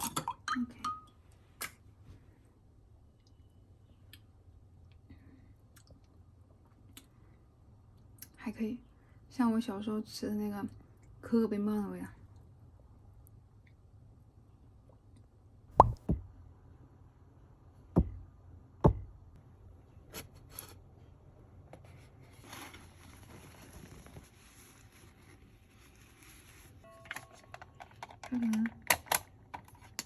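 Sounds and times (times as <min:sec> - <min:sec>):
soft rustle: 0:21.7 - 0:26.9.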